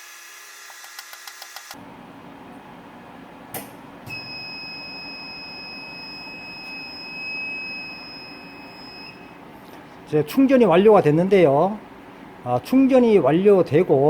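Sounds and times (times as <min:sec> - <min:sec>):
machine high beep: 0:04.1 - 0:09.4.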